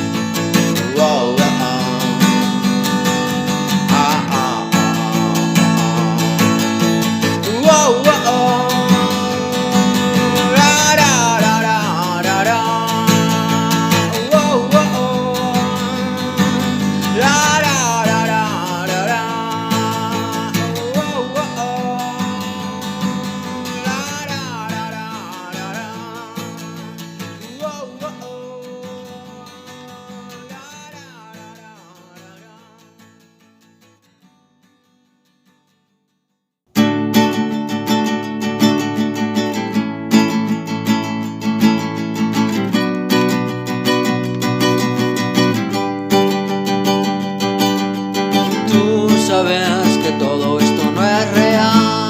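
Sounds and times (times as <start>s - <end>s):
acoustic guitar song: 0.0s - 52.0s
sliding melody line: 0.8s - 26.5s.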